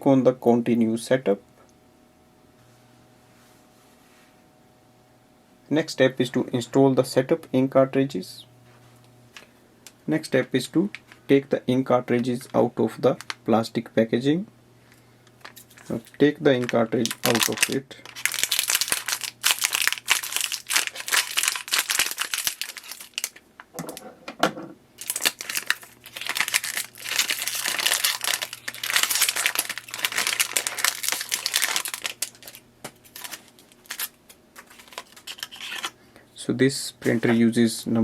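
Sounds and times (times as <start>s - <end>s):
plastic packaging crinkling and tearing: 15.4s - 23.5s, 25.0s - 36.0s
plastic rustling: 15.4s - 23.9s, 25.0s - 36.0s.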